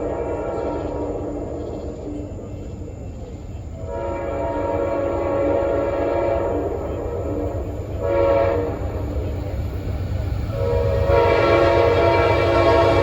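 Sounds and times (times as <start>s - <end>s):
train low rumble: 0.0s - 13.0s
locomotive horn blasts: 3.8s - 9.1s, 10.5s - 13.0s.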